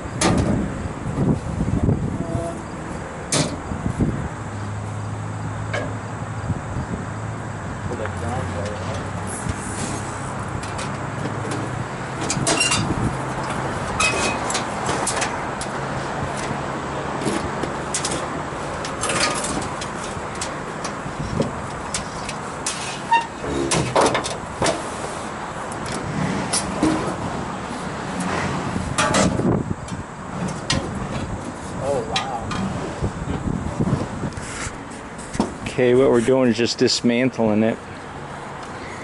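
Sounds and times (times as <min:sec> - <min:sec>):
metal knocks and clanks: 0:29.0 - 0:29.4.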